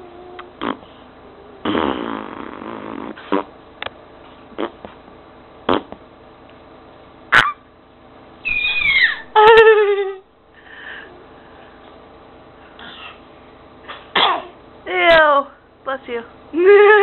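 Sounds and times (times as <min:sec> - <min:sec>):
pet squealing: 0:08.4 - 0:09.4.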